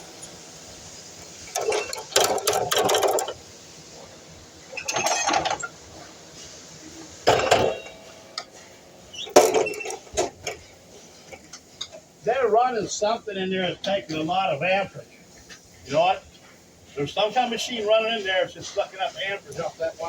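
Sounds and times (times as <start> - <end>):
tools clattering and knocking: 1.4 - 3.4, 4.7 - 6.1, 7.2 - 8.6, 9.2 - 12.1.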